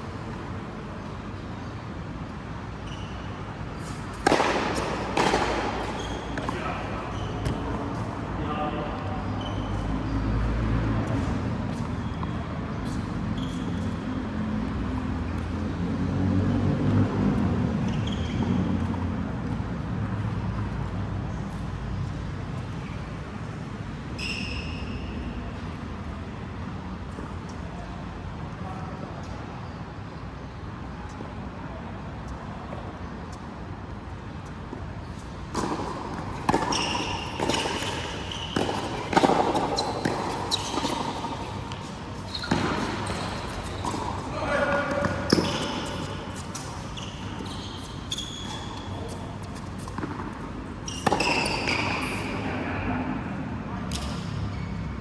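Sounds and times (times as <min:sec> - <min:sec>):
shoe squeaks on court floor: 0:02.6 - 0:15.7, 0:16.4 - 0:26.2, 0:34.4 - 0:52.7, 0:53.9 - 0:55.0
racket strikes: 0:04.2 - 0:06.7.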